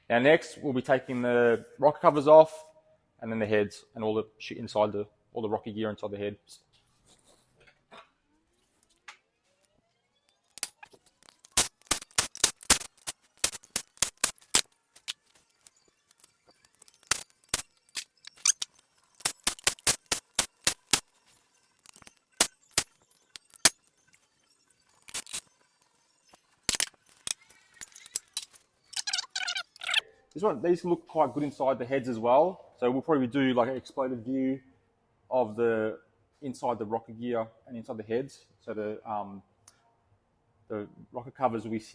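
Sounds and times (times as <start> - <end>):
metallic clicks of hand tools: 10.4 - 21.1, 21.8 - 23.8, 25.0 - 25.5.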